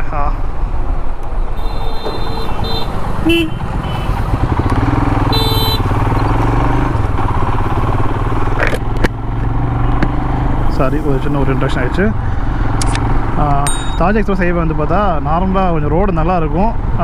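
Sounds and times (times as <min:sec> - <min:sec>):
wind and road noise: 0:00.0 - 0:17.0
vehicle horn: 0:01.6 - 0:04.4, 0:05.2 - 0:06.2
motorcycle engine running: 0:02.0 - 0:10.7.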